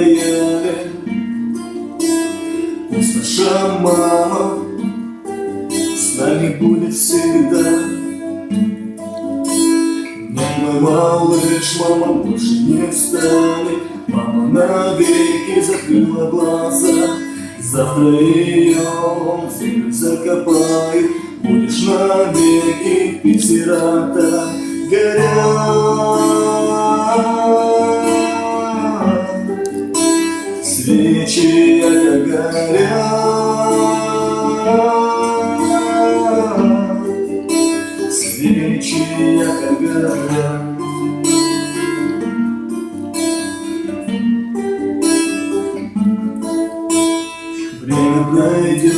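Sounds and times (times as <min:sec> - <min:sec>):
plucked guitar: 0:00.0 - 0:48.9
gliding melody line: 0:10.1 - 0:41.2.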